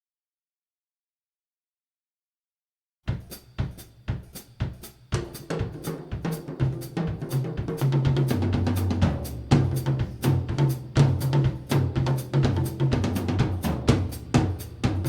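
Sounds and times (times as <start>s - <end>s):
drum kit beat: 3.1s - 15.0s
bass line: 8.0s - 15.0s.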